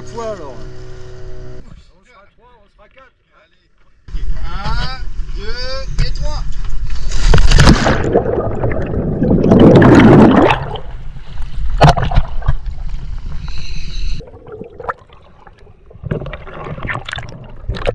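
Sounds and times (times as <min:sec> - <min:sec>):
loud splash into water: 0:07.1 - 0:11.0
muffled underwater rushing and bubbling: 0:07.1 - 0:17.9.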